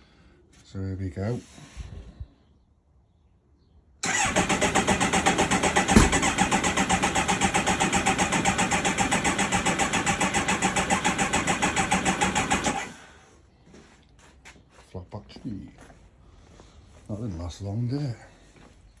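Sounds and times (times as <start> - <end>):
motorcycle engine cranking: 4.0 - 13.0.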